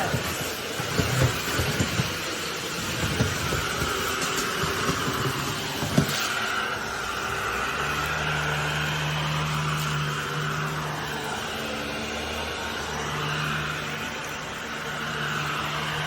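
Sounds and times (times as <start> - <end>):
vacuum cleaner motor whine: 0.0 - 16.0.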